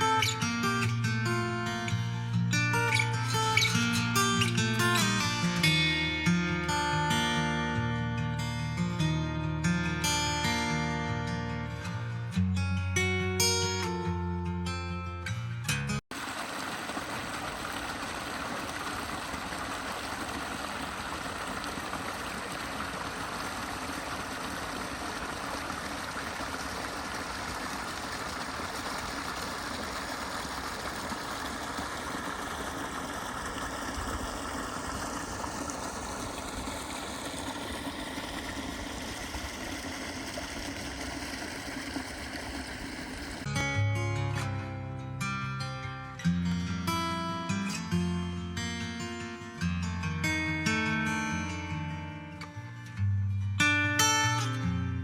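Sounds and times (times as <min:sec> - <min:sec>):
creek water flowing: 0:00.0 - 0:06.2, 0:16.1 - 0:43.5.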